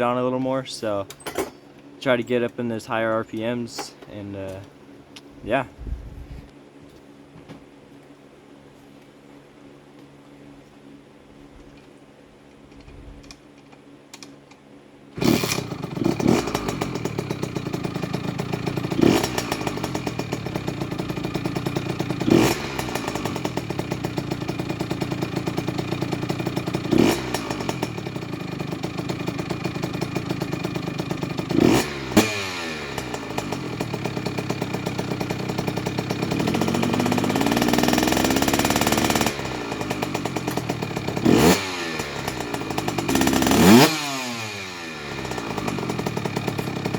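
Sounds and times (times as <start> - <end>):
motorcycle engine idling and revving: 15.2 - 46.9.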